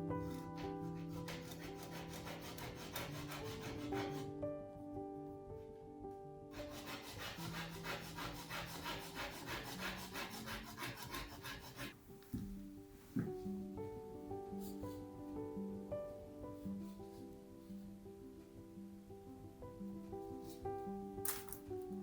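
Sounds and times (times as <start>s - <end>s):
soft background music: 0.0s - 22.0s
hand sanding wood strokes: 0.2s - 4.3s, 6.6s - 12.0s.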